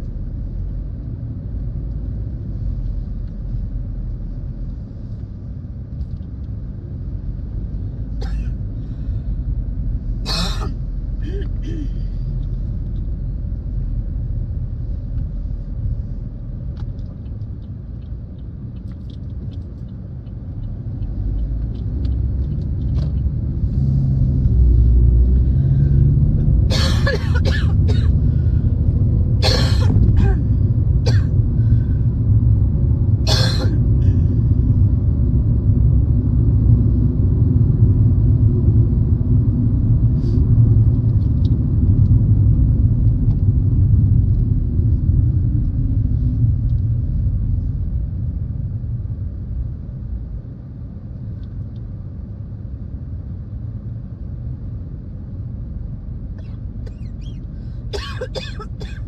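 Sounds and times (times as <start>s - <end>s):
car road and engine rumble: 0.0s - 59.0s
person coughing: 8.2s - 8.6s, 10.3s - 12.0s, 26.7s - 28.1s, 29.4s - 30.5s, 31.1s - 31.3s, 33.3s - 33.8s, 57.9s - 59.0s.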